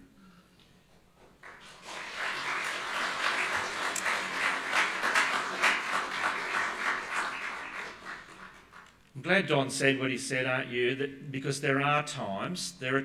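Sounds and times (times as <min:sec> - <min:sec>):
congregation applauding: 0:01.4 - 0:09.1.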